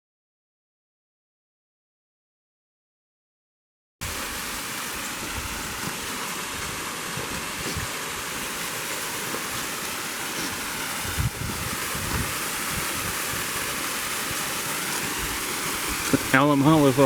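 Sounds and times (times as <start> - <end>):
waterfall rushing: 4.0 - 17.0
wind buffeting microphone: 10.9 - 14.4.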